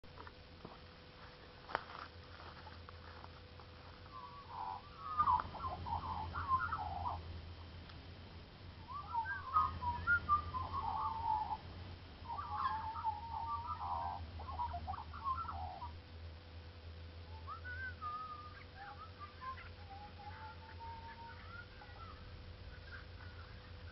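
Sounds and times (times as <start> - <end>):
steady low hum: 0.0 - 23.9
bird chattering call: 4.0 - 7.2, 8.8 - 11.6, 12.2 - 16.0, 17.4 - 23.9.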